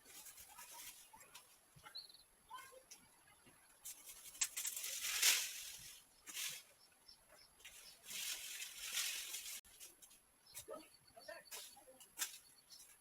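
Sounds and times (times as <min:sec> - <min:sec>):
rustling and light clicking: 0:00.0 - 0:01.9, 0:03.7 - 0:06.8, 0:07.6 - 0:10.7, 0:11.5 - 0:13.0.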